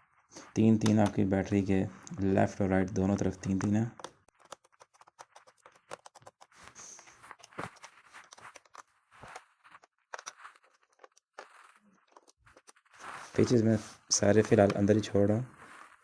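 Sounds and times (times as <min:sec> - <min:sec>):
screwdriver clicking and scraping: 0:09.8 - 0:12.8.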